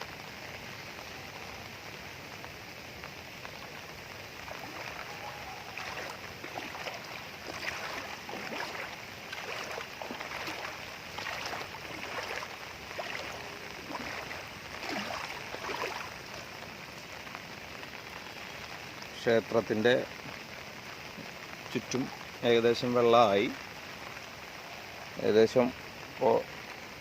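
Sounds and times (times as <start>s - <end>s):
floodwater splashing and sloshing: 0.0s - 19.0s
steady hiss: 0.0s - 27.0s.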